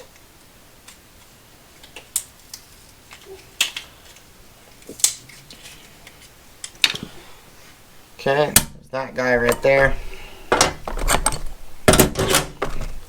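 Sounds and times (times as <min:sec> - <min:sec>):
plastic packaging clicks and snaps: 0:01.8 - 0:04.2, 0:04.8 - 0:05.4.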